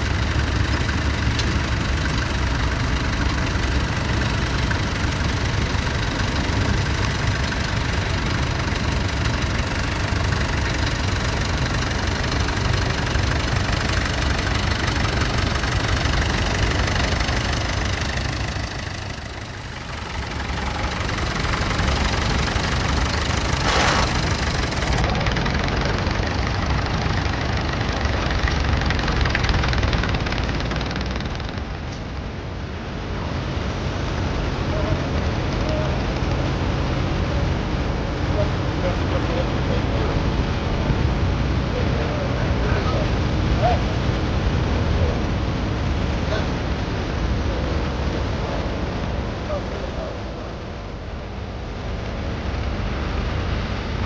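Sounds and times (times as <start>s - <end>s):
tractor engine knocking: 0.0s - 32.1s.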